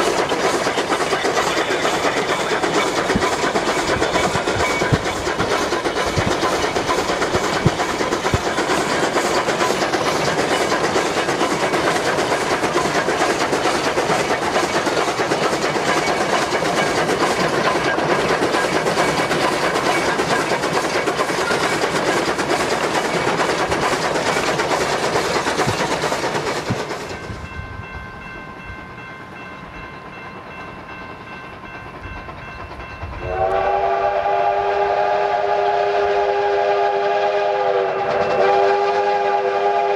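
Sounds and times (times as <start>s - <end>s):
train rumbling and rattling past: 0.0s - 39.9s
train horn chord: 33.2s - 39.9s.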